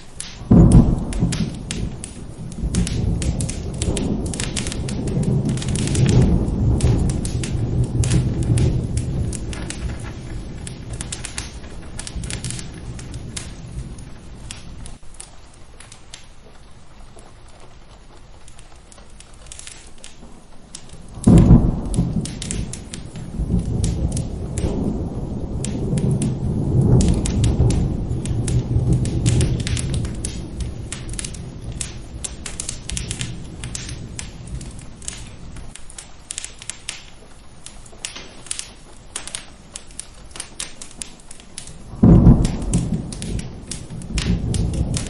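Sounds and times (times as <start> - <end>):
steady rain: 0.0 - 45.0
thunder rumbling: 0.0 - 45.0
wood fire crackling: 0.0 - 45.0
loud thunderclap: 0.3 - 15.0, 21.0 - 35.8, 41.7 - 45.0.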